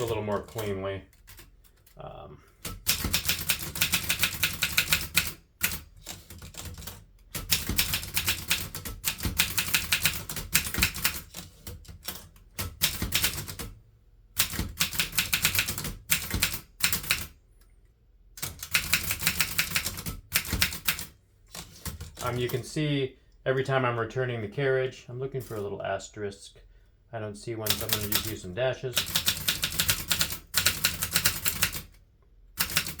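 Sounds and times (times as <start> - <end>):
manual typewriter typing: 0.0 - 2.0, 2.6 - 13.8, 14.4 - 17.4, 18.4 - 22.8, 27.6 - 33.0.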